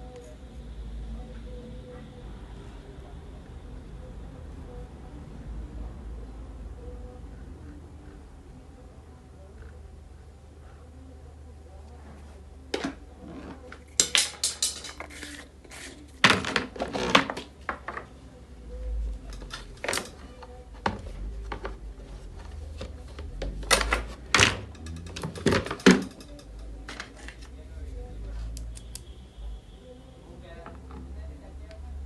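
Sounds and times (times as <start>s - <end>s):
low steady hum: 0.0s - 16.2s, 17.6s - 32.0s
tools and parts clattering: 13.8s - 15.4s, 23.5s - 27.4s.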